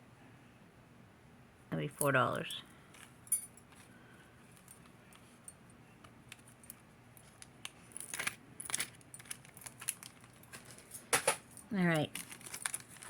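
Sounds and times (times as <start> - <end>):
metal earrings clinking: 2.0 - 3.9, 6.3 - 13.0.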